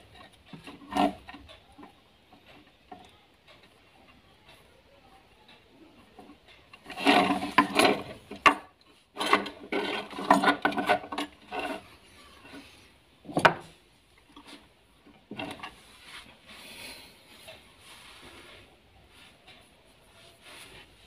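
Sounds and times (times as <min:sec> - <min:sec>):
plastic parts scraping and clicking: 0:00.0 - 0:03.8, 0:06.0 - 0:15.8.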